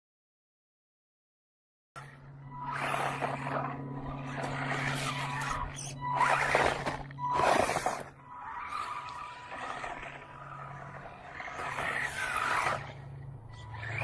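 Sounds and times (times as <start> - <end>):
rc truck motor whining: 2.0 - 14.0
tyres scrabbling: 4.3 - 14.0.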